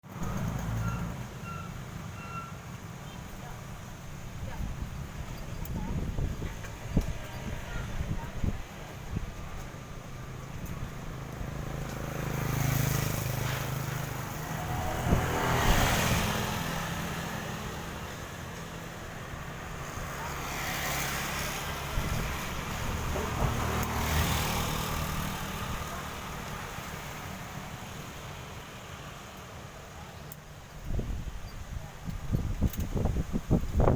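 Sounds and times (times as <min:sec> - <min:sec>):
gusty wind buffeting microphone: 0:03.7 - 0:11.9, 0:14.4 - 0:16.9, 0:21.6 - 0:25.9, 0:30.7 - 0:33.9.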